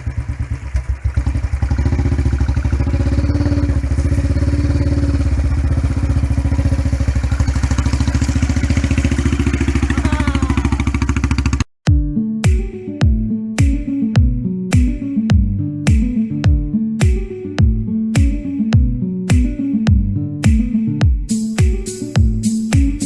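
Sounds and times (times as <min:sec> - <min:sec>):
motorcycle engine running: 0:00.0 - 0:11.7.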